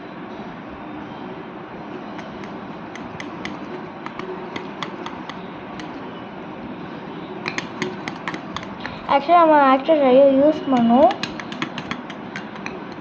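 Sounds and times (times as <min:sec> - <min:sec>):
stirrer tapping a bowl: 0:02.1 - 0:06.0, 0:07.4 - 0:09.1, 0:10.5 - 0:13.0.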